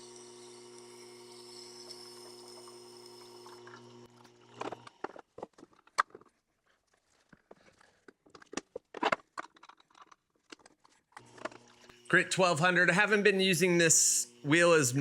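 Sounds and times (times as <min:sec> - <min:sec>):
sharpener motor humming: 0:00.0 - 0:05.0.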